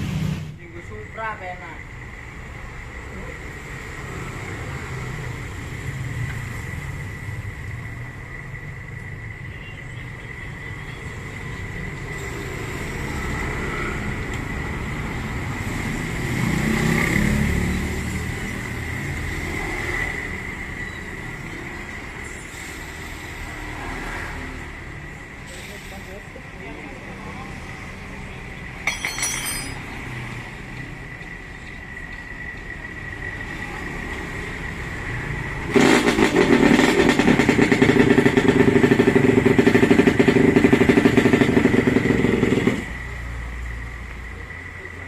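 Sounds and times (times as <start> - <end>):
motor vehicle rumble: 0.0 - 0.7.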